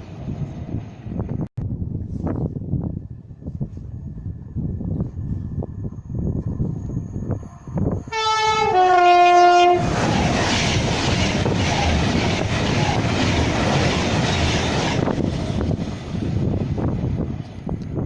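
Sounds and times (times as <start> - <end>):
train rushing past: 4.0 - 18.0
two-note train horn: 8.1 - 9.9
rail clatter: 9.8 - 18.0.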